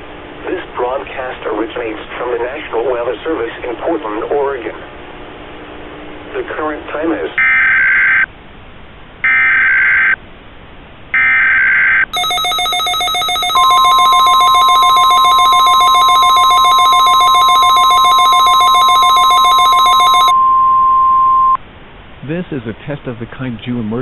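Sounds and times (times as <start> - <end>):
loud steady alarm tone: 9.2 - 10.2, 11.2 - 21.6
buzzing data bursts: 11.2 - 20.4
rapidly pulsing alert tone: 11.2 - 20.4.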